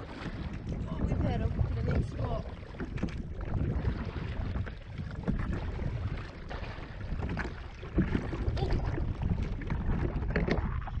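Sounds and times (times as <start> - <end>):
paddle strokes splashing water: 0.0 - 11.0
wind rumbling on microphone: 0.0 - 11.0.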